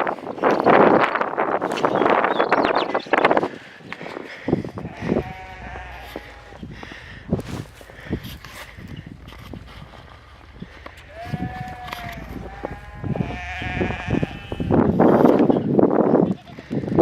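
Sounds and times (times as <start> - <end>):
young farm animal bleating: 4.8 - 16.8.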